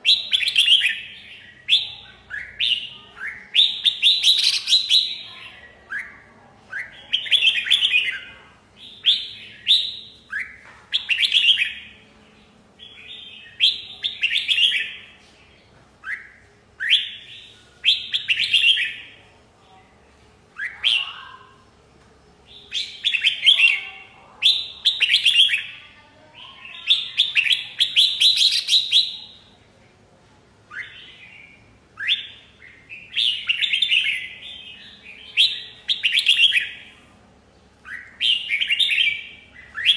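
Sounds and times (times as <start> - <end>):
bird singing whistled phrases: 0.0 - 5.3, 16.0 - 19.1, 22.5 - 23.8, 30.7 - 36.8, 37.8 - 39.9.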